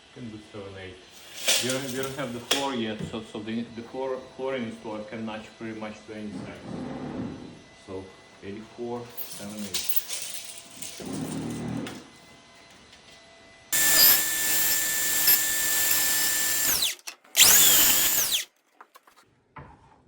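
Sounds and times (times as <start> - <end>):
power saw cutting wood: 13.8 - 18.5.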